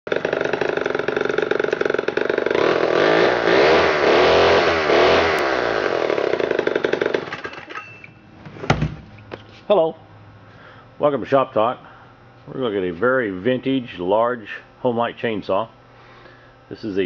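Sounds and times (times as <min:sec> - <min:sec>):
chainsaw engine at high revs: 0:00.1 - 0:07.5.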